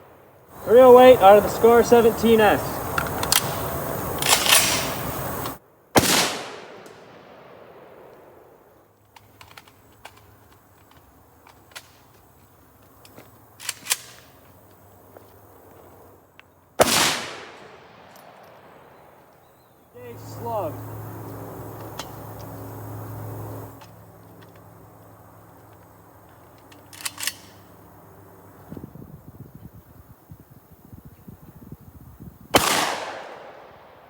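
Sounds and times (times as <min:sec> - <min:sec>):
rifle shots with echo: 0:03.3 - 0:05.2, 0:05.9 - 0:08.7, 0:16.8 - 0:19.3, 0:32.5 - 0:34.0.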